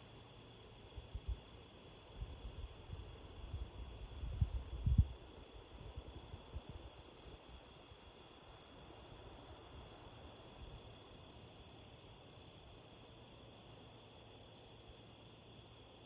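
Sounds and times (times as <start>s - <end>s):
wind buffeting microphone: 2.2s - 6.9s.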